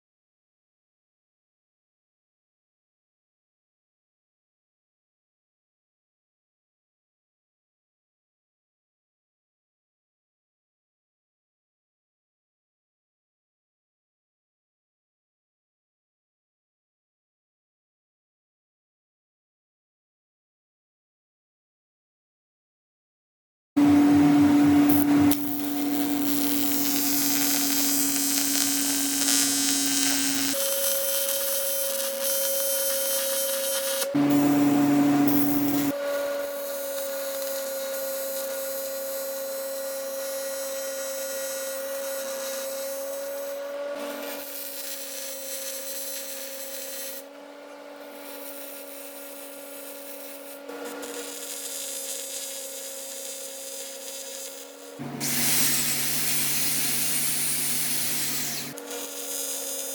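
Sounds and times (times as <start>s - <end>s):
power tool whining: 23.8s - 59.9s.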